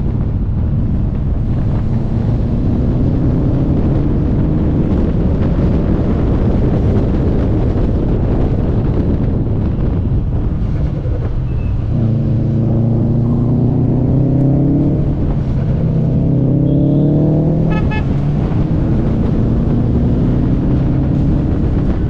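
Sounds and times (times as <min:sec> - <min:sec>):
wind noise on microphone: 0:00.0 - 0:22.0
car engine revving: 0:01.2 - 0:05.2, 0:11.9 - 0:22.0.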